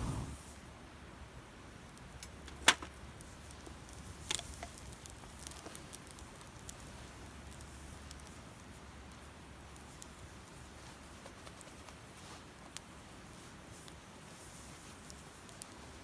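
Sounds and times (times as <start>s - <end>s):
fire popping: 0.0s - 0.4s, 2.0s - 10.8s
firewood crackling: 0.0s - 0.5s, 1.8s - 16.0s.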